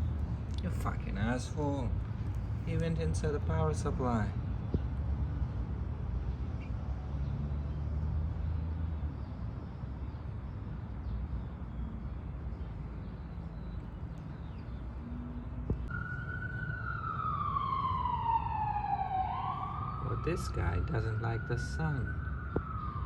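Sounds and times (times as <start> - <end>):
street traffic rumble: 0.0 - 23.0
emergency vehicle siren: 15.0 - 23.0.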